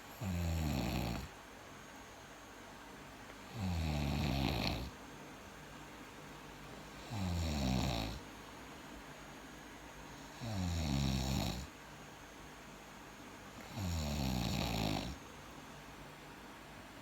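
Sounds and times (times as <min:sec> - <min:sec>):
person snoring: 0:00.2 - 0:01.3, 0:03.5 - 0:04.9, 0:07.0 - 0:08.2, 0:10.3 - 0:11.7, 0:13.6 - 0:15.2.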